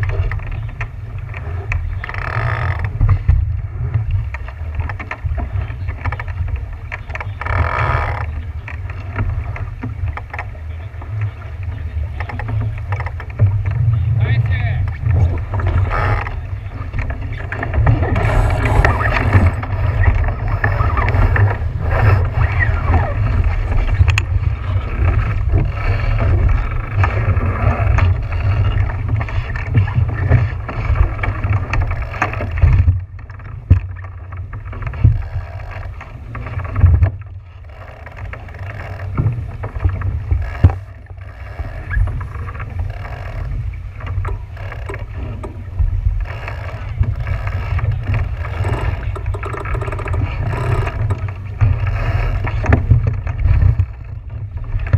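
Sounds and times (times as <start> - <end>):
boat engine running: 0.0 - 54.9
wind rumbling on microphone: 0.0 - 54.9
water noise: 14.8 - 54.9
thumps: 47.2 - 51.9.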